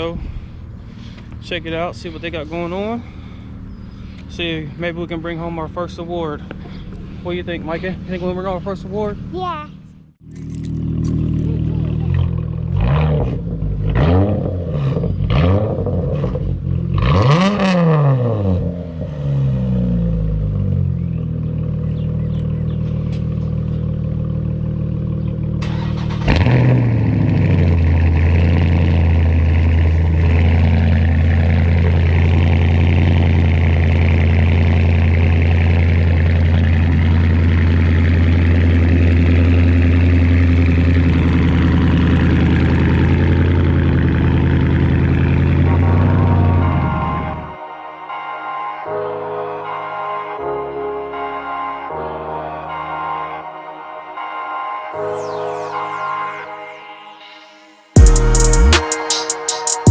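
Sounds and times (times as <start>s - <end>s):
low engine drone: 0.0s - 17.4s, 18.2s - 59.9s
vehicle engine revving: 1.1s - 47.6s.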